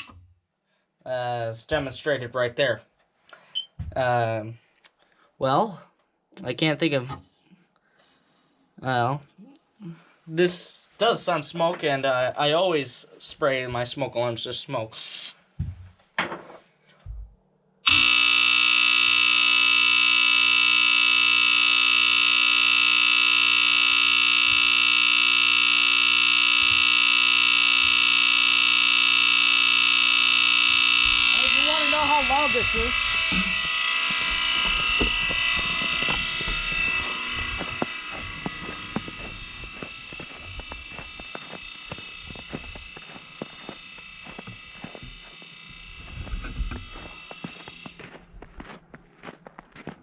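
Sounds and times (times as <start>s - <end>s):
smoke alarm horn steady tone: 17.8s - 48.0s.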